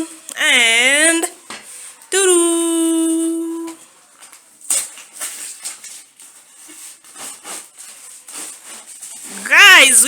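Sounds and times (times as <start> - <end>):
packaging rustling and scraping: 1.3 - 2.1, 3.8 - 9.9.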